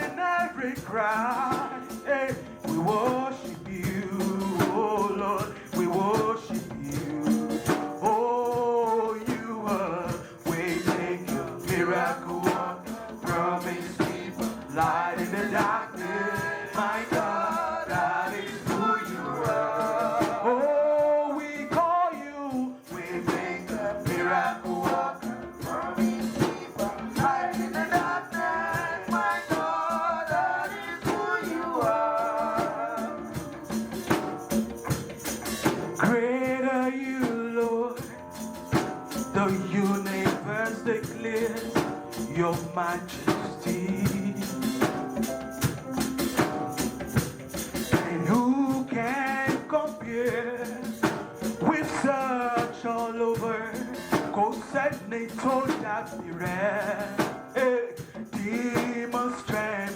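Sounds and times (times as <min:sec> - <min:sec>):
gospel singing voices: 0:00.0 - 0:59.9
tambourine shaken: 0:00.0 - 0:59.9.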